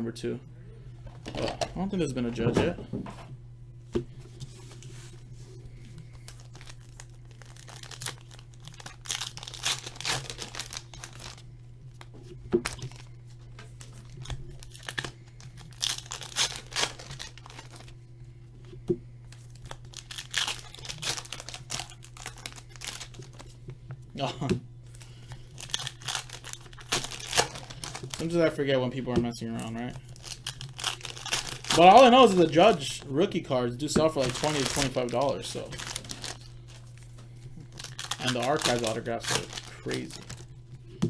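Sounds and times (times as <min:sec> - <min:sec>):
steady low hum: 0:00.0 - 0:41.0
foil wrappers tearing and crinkling: 0:05.7 - 0:18.0, 0:19.3 - 0:23.6, 0:24.9 - 0:28.5, 0:29.5 - 0:33.1, 0:34.0 - 0:40.5.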